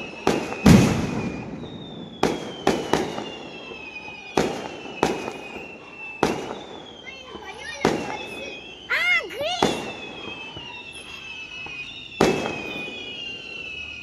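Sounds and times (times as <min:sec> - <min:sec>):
firework bangs: 0:00.0 - 0:14.0
whistling tone sliding down: 0:01.0 - 0:03.4.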